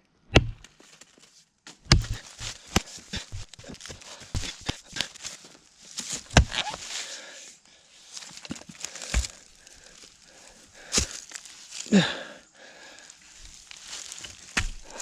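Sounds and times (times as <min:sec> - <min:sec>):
heavy thumps: 0:00.3 - 0:00.7, 0:01.9 - 0:05.2, 0:06.3 - 0:06.8, 0:09.1 - 0:09.4
scraping crackling noises: 0:01.9 - 0:07.1.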